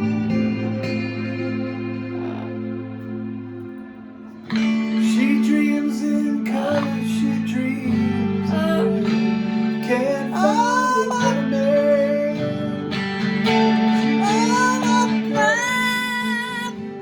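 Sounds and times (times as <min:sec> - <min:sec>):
acoustic guitar strumming: 0:04.3 - 0:17.0
high voice singing: 0:05.0 - 0:09.2, 0:09.8 - 0:13.1, 0:14.0 - 0:17.0.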